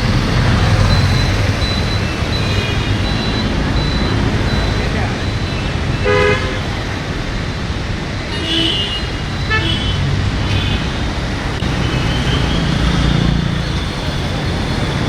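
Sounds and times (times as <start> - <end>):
traffic rumble: 0.0 - 15.0
vehicle horns honking: 6.0 - 6.7, 8.3 - 10.9.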